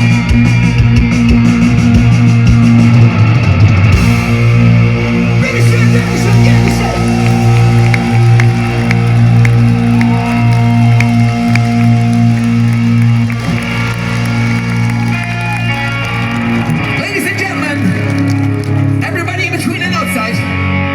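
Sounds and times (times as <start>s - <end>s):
distorted electric guitars: 0.0s - 20.9s
live rock band: 0.0s - 20.9s
crowd cheering and whooping: 2.8s - 19.0s.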